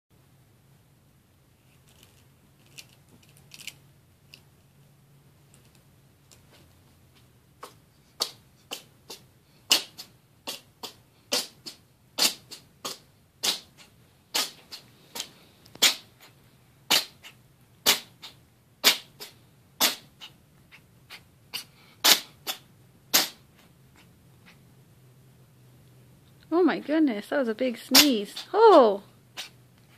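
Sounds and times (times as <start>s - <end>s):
cat sneezing: 7.6s - 24.6s, 29.3s - 29.6s.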